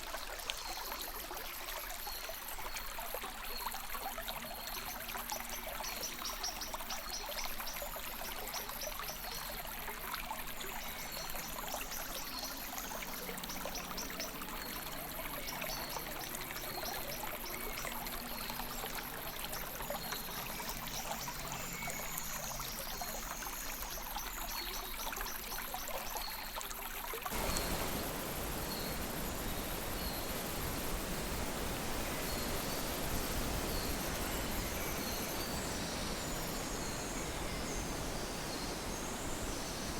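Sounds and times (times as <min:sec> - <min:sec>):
faint high chirps: 0:27.3 - 0:39.9
river water rushing: 0:27.3 - 0:39.9.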